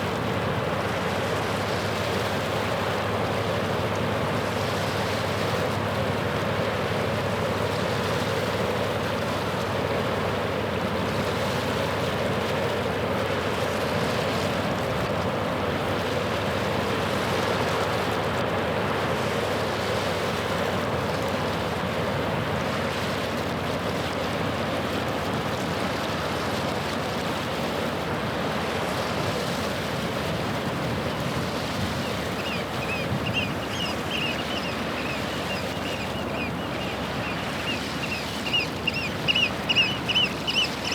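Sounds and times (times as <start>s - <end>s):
wind: 0.0s - 40.9s
waves rushing: 26.7s - 40.9s
ship engine droning: 29.5s - 40.9s
short bird calls: 31.9s - 40.9s.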